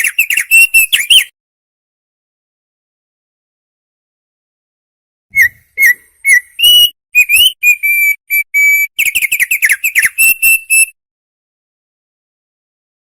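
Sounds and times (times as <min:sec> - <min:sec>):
songbird whistling song: 0:00.0 - 0:01.3, 0:05.3 - 0:11.0.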